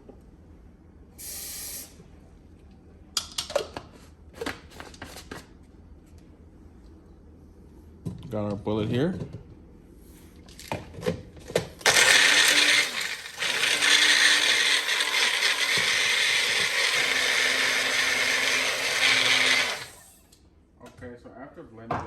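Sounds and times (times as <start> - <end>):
blender motor chopping: 11.8 - 20.1.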